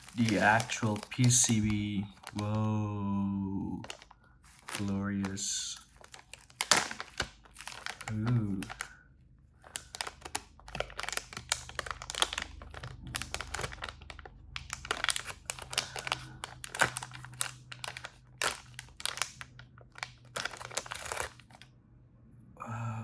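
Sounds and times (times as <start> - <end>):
packaging crinkling: 0.0 - 2.8, 3.6 - 9.0, 9.6 - 21.7.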